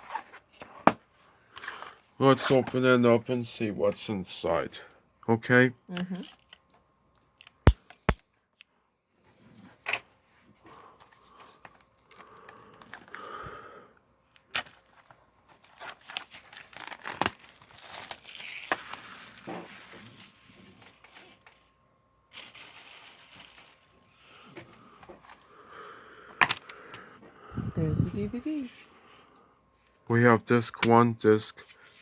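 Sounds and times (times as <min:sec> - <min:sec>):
packaging clicks and rustles: 0:11.0 - 0:13.4, 0:14.3 - 0:25.5
plastic wrap tearing and crinkling: 0:14.5 - 0:21.6, 0:22.3 - 0:24.1.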